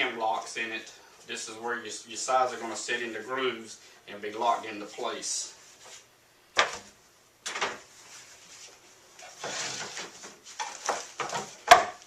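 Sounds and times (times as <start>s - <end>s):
rustling scrape: 7.9s - 11.2s
wooden panels clattering: 9.3s - 12.0s
sharp wooden knocks: 10.8s - 12.0s.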